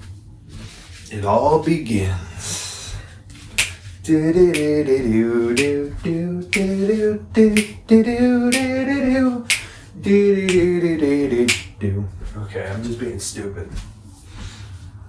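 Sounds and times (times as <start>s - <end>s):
finger snapping: 3.6s - 3.8s, 4.5s - 4.8s, 5.6s - 5.8s, 7.6s - 7.8s, 8.5s - 8.8s, 9.5s - 9.8s, 10.5s - 10.7s, 11.5s - 11.7s
man singing long notes: 4.3s - 11.7s.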